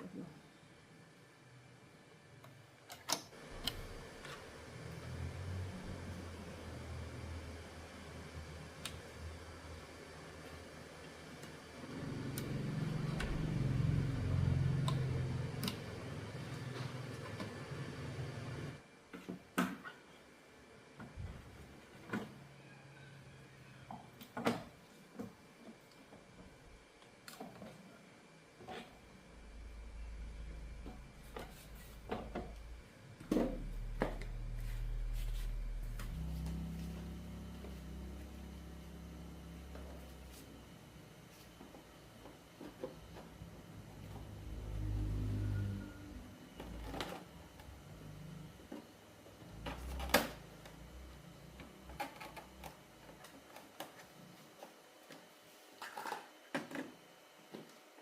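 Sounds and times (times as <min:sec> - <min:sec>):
low hum shifting in pitch: 0:11.8 - 0:17.2, 0:29.3 - 0:41.1, 0:43.0 - 0:48.6.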